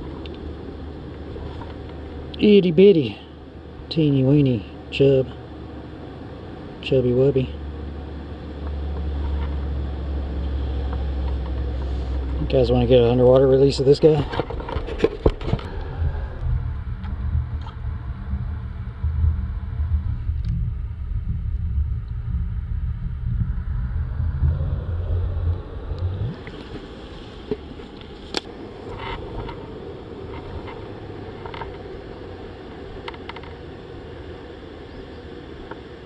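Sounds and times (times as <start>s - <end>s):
muffled underwater rumble: 8.2s - 36.0s
flowing water hiss: 25.5s - 36.0s.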